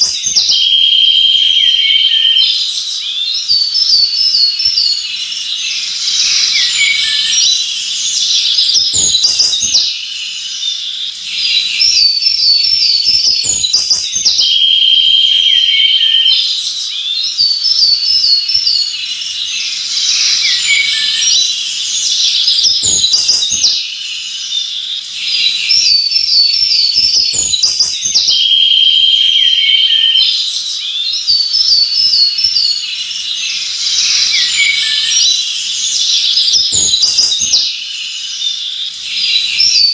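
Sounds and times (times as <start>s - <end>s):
birds chirping and whistling: 0.0s - 39.9s
steady high hiss: 2.8s - 12.0s, 16.6s - 29.8s, 30.4s - 39.8s.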